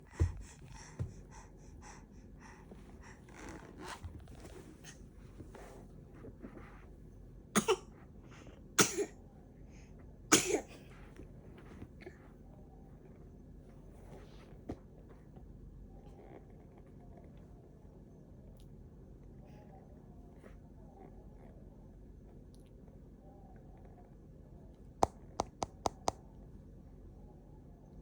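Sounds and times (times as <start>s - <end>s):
baby sneezing: 7.6s - 7.9s, 8.8s - 9.1s, 10.3s - 10.7s.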